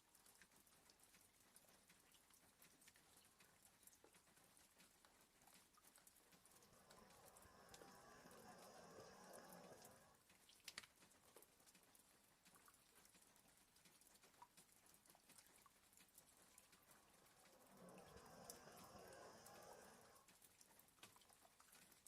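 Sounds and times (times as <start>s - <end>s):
light rain on a window: 0.0s - 22.0s
dog snoring softly: 5.9s - 10.3s, 16.4s - 20.8s.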